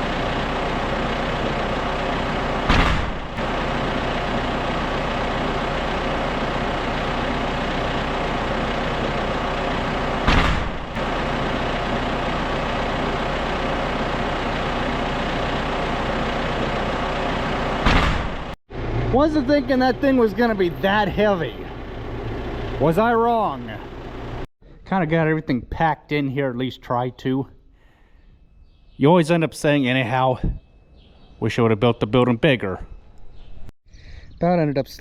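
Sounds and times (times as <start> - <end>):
tractor diesel engine idling: 0.0 - 24.5.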